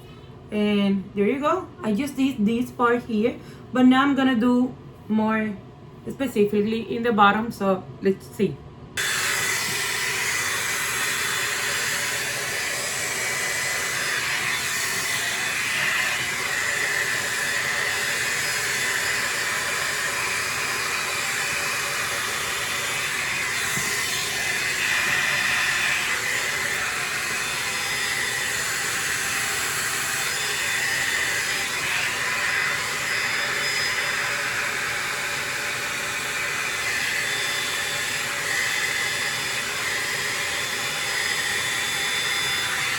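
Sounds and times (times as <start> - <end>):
hot-air blow dryer running: 9.0 - 42.9.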